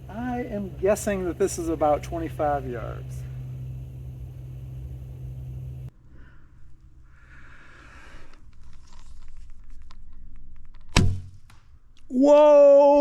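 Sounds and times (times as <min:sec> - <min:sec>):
rustling and scraping of arrow: 0:08.2 - 0:11.8.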